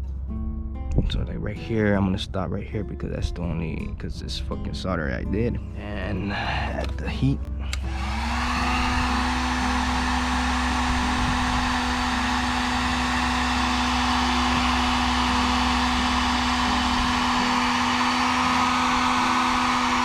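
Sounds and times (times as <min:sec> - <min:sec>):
hot-air blower running: 0:07.7 - 0:20.0.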